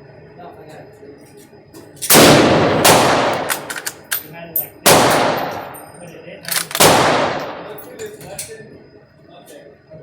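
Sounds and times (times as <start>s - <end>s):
rifle shots: 2.1s - 4.0s, 4.8s - 5.8s, 6.5s - 7.8s.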